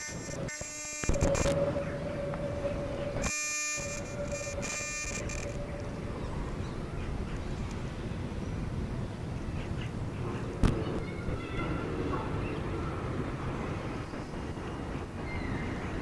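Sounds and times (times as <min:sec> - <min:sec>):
tram door warning buzzer: 0:00.0 - 0:06.6
steady hum: 0:00.0 - 0:16.0.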